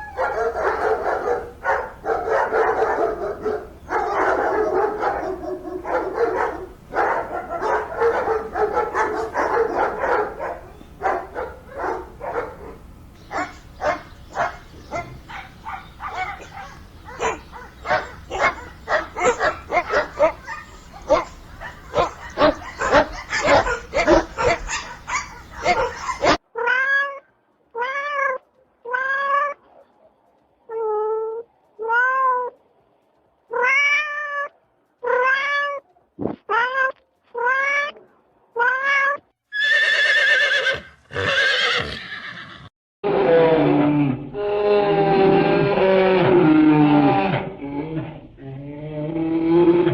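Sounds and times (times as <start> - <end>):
dogs yapping: 0.0 - 26.4
cat meowing: 33.5 - 35.9, 38.6 - 39.2.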